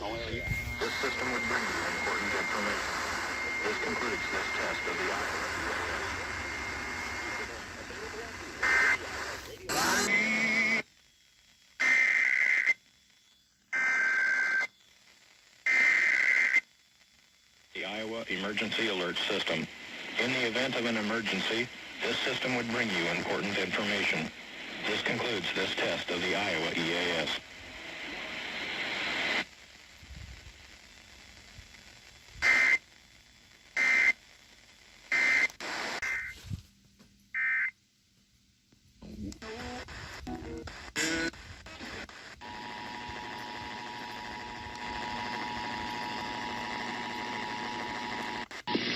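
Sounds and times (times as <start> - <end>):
radio hiss: 0.0 - 36.6, 39.0 - 48.9.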